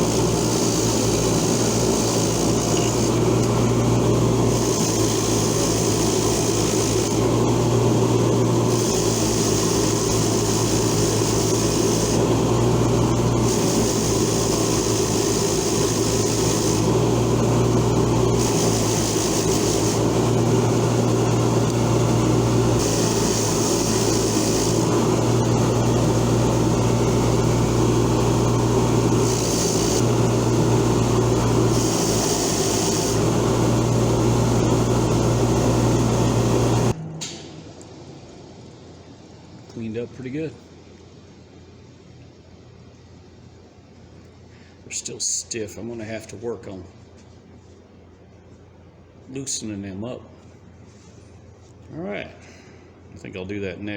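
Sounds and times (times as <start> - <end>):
wire wheel motor humming: 0.0 - 37.0.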